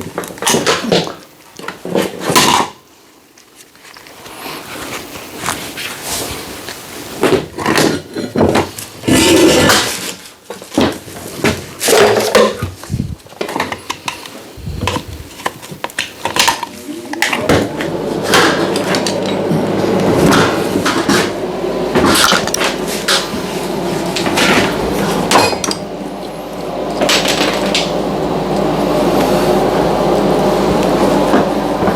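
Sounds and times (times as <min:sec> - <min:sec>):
steady machine hum: 0:12.8 - 0:31.9.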